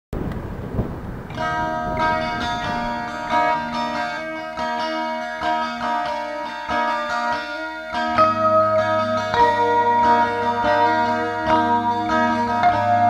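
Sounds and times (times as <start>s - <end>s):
plucked guitar-like melody: 1.2s - 13.0s.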